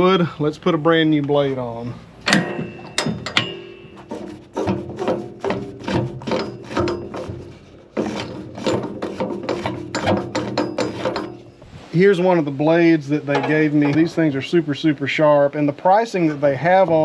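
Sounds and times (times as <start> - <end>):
metal parts clicking and rattling: 2.2 - 11.7.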